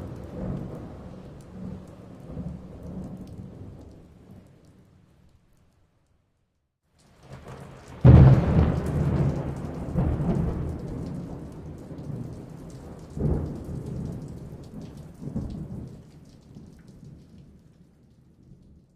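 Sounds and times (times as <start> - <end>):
thunder clap and rumbles: 0.0 - 4.5, 7.4 - 17.4
steady rain: 0.0 - 18.9.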